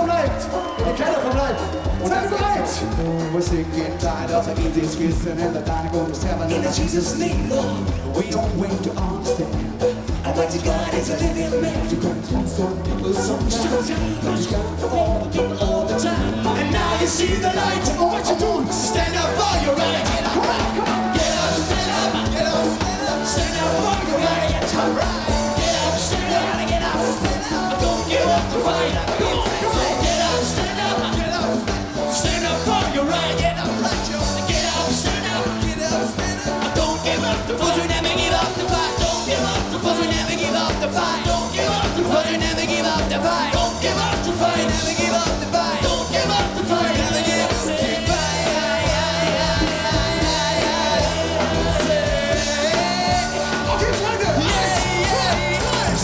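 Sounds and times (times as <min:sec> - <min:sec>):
person singing: 0:00.0 - 0:56.0
reggae band playing: 0:00.0 - 0:56.0
repeating bass line: 0:00.0 - 0:56.0.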